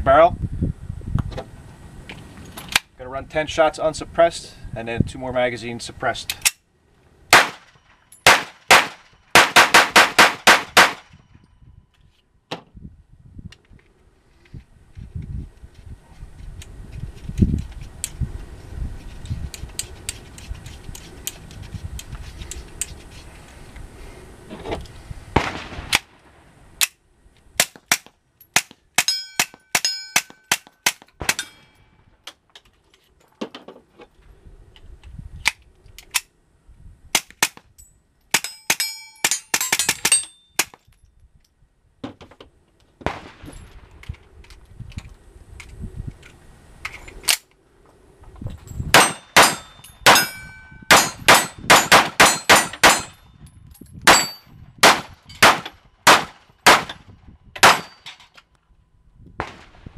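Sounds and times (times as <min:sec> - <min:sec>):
suppressed pistol shots: 0:07.3 - 0:11.1, 0:25.4 - 0:26.2, 0:49.0 - 0:53.1, 0:54.1 - 0:57.0, 0:57.6 - 0:58.0.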